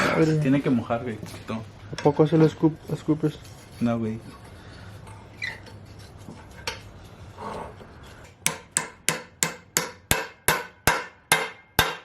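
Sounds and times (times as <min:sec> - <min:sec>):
hammer striking metal: 0:08.4 - 0:12.0.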